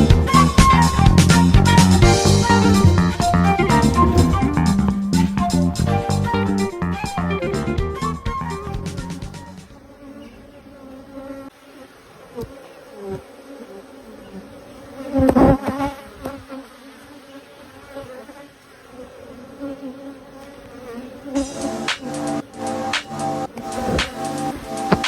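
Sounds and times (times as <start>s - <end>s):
insect-like buzzing hum: 0.0s - 7.1s, 8.4s - 25.0s
music: 0.0s - 9.6s, 21.4s - 25.0s.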